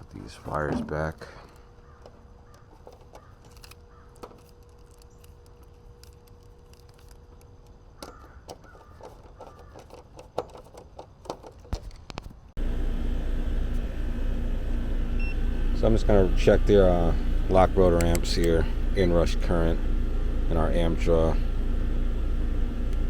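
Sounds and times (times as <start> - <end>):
low background hum: 0.0 - 23.0
loud machine sound: 12.6 - 23.0.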